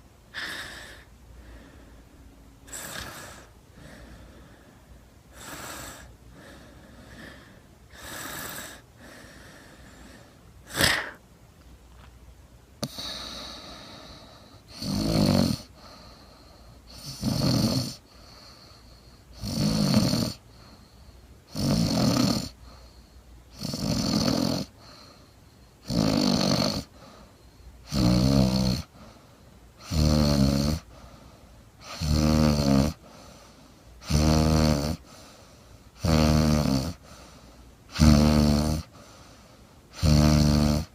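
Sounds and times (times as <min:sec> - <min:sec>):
woman snoring: 0:00.3 - 0:01.1, 0:02.7 - 0:04.0, 0:05.4 - 0:09.3, 0:10.1 - 0:11.2, 0:12.8 - 0:15.8, 0:16.9 - 0:18.1, 0:19.3 - 0:20.4, 0:21.5 - 0:22.6, 0:23.5 - 0:24.7, 0:25.8 - 0:27.0, 0:27.8 - 0:29.0, 0:29.8 - 0:30.9, 0:31.8 - 0:33.0, 0:34.0 - 0:35.1, 0:36.0 - 0:37.0, 0:37.9 - 0:39.0, 0:39.9 - 0:40.9.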